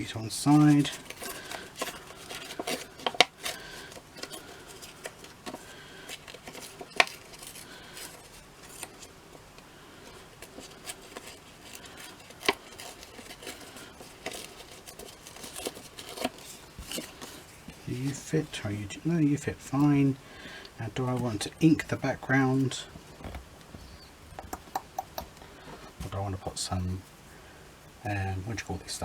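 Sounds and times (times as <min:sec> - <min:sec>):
paper rustling: 0:00.0 - 0:27.3
sharp taps: 0:23.2 - 0:25.4.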